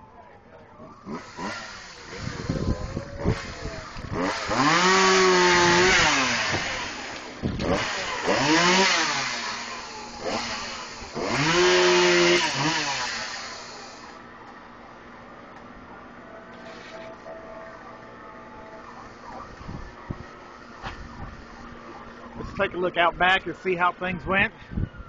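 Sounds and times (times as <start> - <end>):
chainsaw revving: 0.9 - 14.2.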